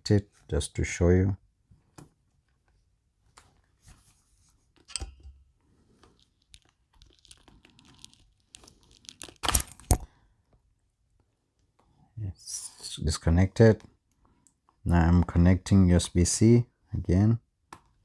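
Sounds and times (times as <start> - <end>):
cable handling rustling: 2.0 - 10.0.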